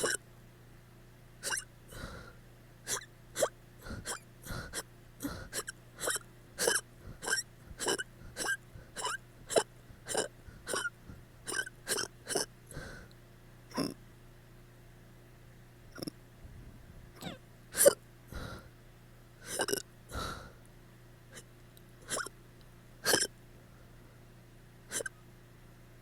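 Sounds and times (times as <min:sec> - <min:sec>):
woman hiccuping: 0:00.0 - 0:00.2, 0:01.4 - 0:01.7, 0:02.9 - 0:12.5, 0:13.7 - 0:14.0, 0:17.2 - 0:18.0, 0:19.4 - 0:19.9, 0:22.1 - 0:22.3, 0:23.0 - 0:23.3, 0:24.9 - 0:25.2
faint breaths: 0:01.4 - 0:12.0, 0:12.7 - 0:13.2, 0:17.8 - 0:18.8, 0:19.4 - 0:20.6.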